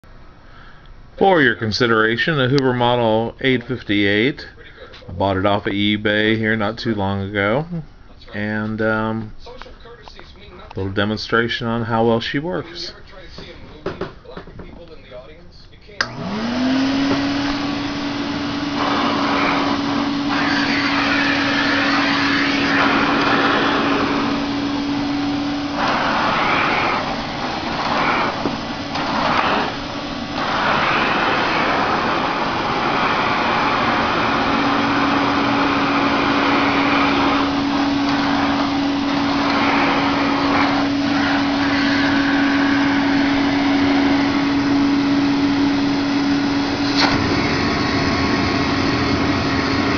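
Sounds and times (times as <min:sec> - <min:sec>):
vacuum cleaner motor hum: 0:16.0 - 0:49.9
rush of air: 0:16.9 - 0:49.9.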